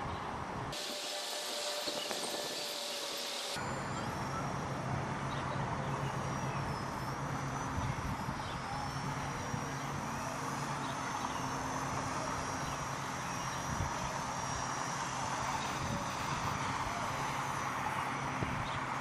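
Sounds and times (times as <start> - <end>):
wind on microphone: 0.0 - 3.4, 6.6 - 9.6, 18.3 - 18.9
rc helicopter motor whine: 0.7 - 19.0.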